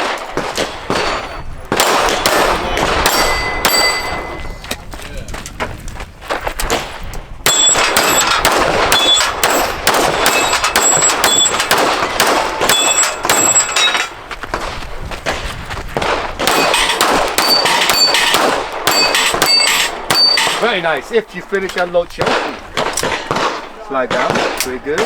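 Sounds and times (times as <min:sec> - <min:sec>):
pistol shots: 0:00.0 - 0:04.6, 0:06.7 - 0:21.0, 0:21.6 - 0:25.0
steel targets ringing: 0:02.3 - 0:04.6, 0:07.5 - 0:14.2, 0:16.5 - 0:21.0.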